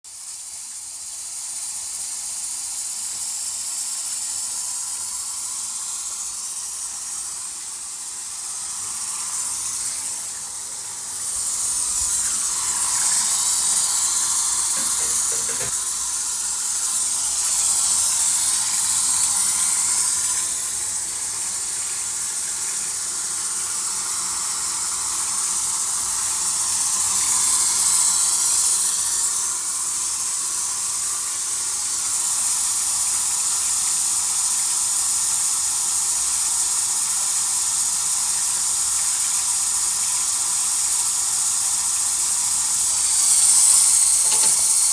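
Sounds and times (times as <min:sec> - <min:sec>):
running water: 0:03.1 - 0:34.7, 0:41.6 - 0:44.9.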